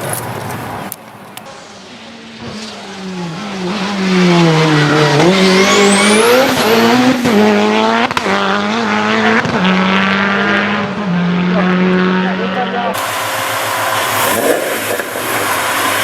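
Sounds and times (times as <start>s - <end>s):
car engine under hard load: 0.0s - 16.0s
high whistle climbing in pitch: 4.7s - 6.9s.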